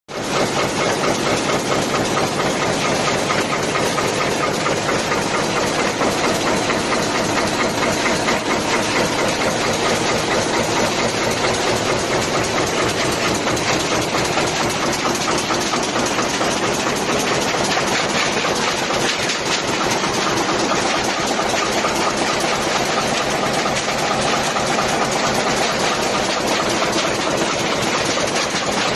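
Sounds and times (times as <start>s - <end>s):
rapid press strokes: 0.1s - 28.9s.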